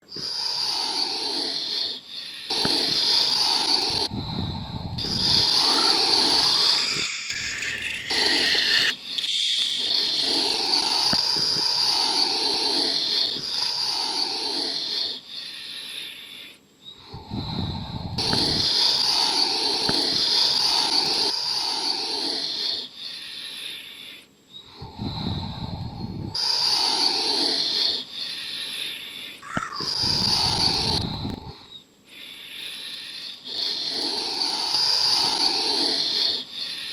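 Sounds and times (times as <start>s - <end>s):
low rough breath: 0.0s - 36.9s
person imitating waves with breath: 0.1s - 15.2s, 29.4s - 31.5s.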